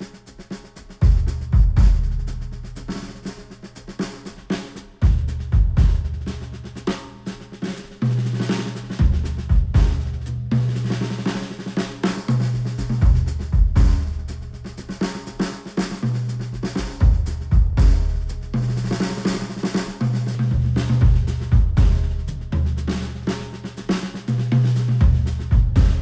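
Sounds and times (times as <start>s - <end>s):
instrumental music with drums and bass: 0.0s - 26.0s.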